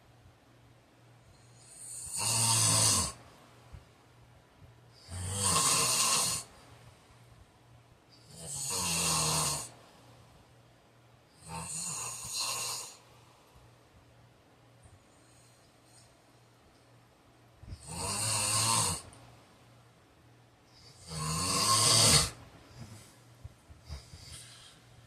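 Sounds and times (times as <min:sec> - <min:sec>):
man snoring: 0:01.6 - 0:03.2, 0:05.0 - 0:06.5, 0:08.2 - 0:09.8, 0:11.4 - 0:13.0, 0:17.8 - 0:19.1, 0:20.8 - 0:22.4.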